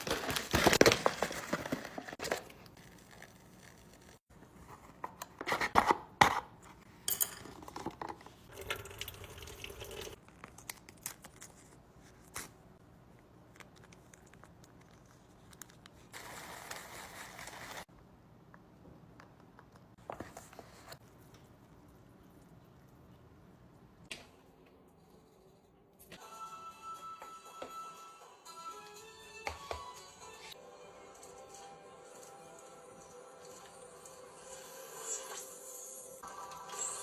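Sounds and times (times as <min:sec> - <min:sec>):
food wrapper crinkling: 0:00.0 - 0:04.2, 0:10.2 - 0:12.6, 0:13.5 - 0:17.8.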